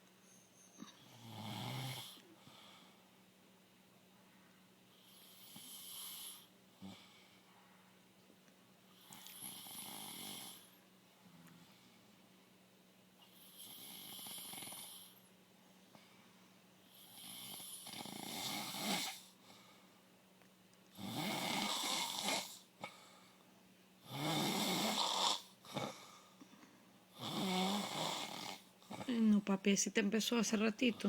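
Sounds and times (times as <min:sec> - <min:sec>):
man snoring: 0:01.1 - 0:02.2, 0:09.1 - 0:10.7, 0:13.6 - 0:15.1, 0:17.1 - 0:19.2, 0:21.0 - 0:22.6, 0:24.1 - 0:26.0, 0:27.2 - 0:29.1.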